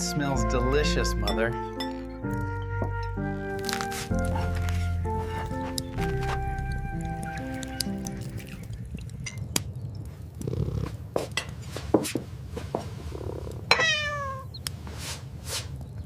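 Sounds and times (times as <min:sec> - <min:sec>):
cat meowing: 0:13.7 - 0:14.5.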